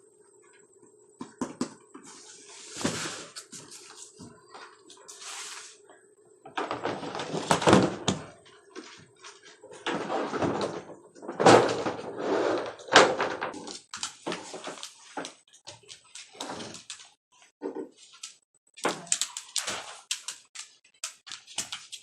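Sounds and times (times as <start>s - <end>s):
plastic panels scraping and rattling: 6.5s - 15.4s.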